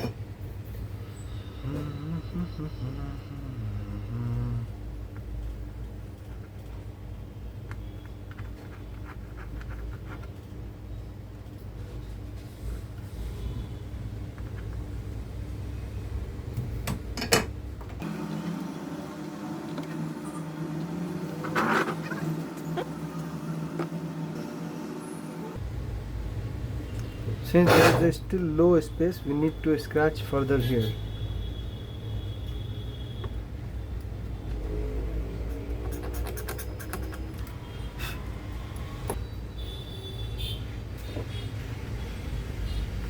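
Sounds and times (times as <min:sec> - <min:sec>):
low whir of bench equipment: 0:00.0 - 0:08.2
electric hum: 0:01.1 - 0:06.4
tool scrape: 0:21.4 - 0:22.3, 0:27.6 - 0:28.1.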